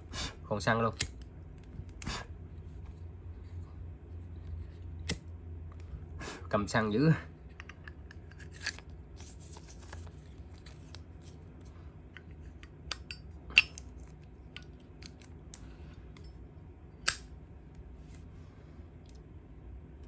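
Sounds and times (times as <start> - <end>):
lighter clicks and metal clacks: 17.0 - 17.3.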